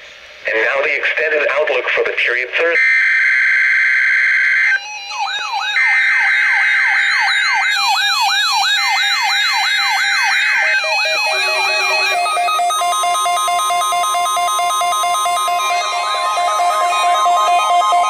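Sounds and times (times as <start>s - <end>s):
rasping digital data tones: 2.8s - 18.0s
rising siren-like tone: 4.5s - 18.0s
stepped electronic tones: 4.6s - 18.0s.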